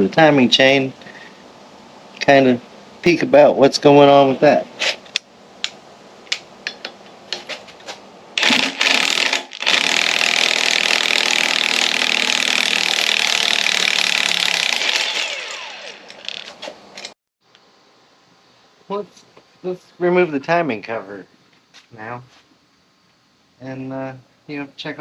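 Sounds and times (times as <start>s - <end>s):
power wrench running: 8.4s - 16.7s
tools clicking: 16.0s - 17.1s.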